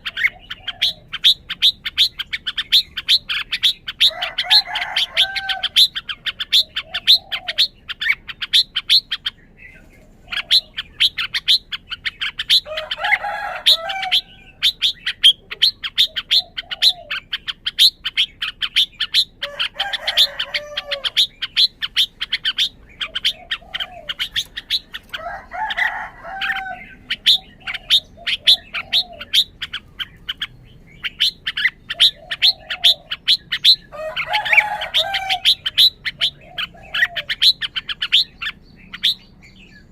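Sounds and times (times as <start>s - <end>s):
bird rapid high chirps: 0.0s - 39.9s.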